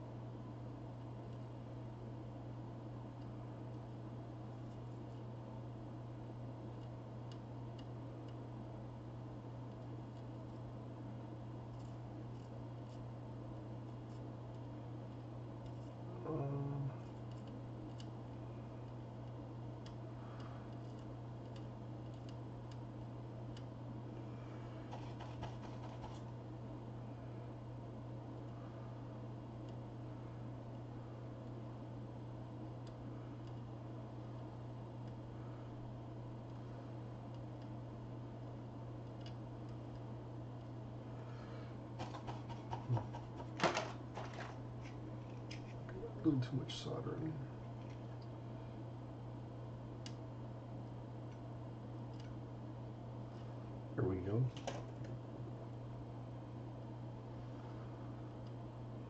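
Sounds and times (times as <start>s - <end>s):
low electrical hum: 0.0s - 59.0s
soldering tools ticking: 6.7s - 8.6s, 17.0s - 23.9s, 36.3s - 40.8s.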